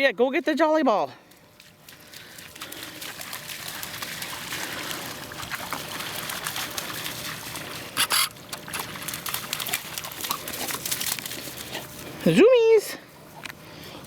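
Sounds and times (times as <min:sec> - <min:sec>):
dogs splashing through water: 0:01.2 - 0:12.4.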